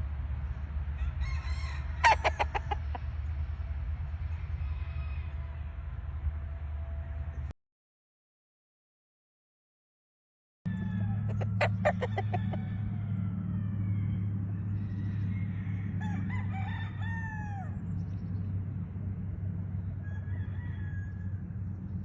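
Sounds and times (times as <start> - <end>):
steady low hum: 0.0 - 7.5, 10.7 - 22.0
rooster crowing: 0.9 - 3.0, 4.3 - 6.0, 10.7 - 17.9, 19.8 - 21.5.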